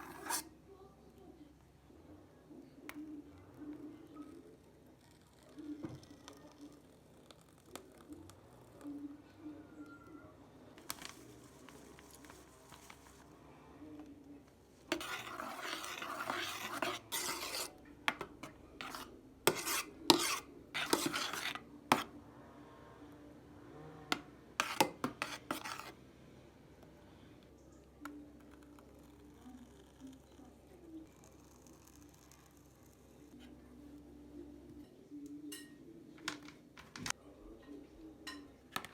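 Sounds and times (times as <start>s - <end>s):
dishes scraping: 0.0s - 0.5s, 14.9s - 22.1s, 24.1s - 26.0s.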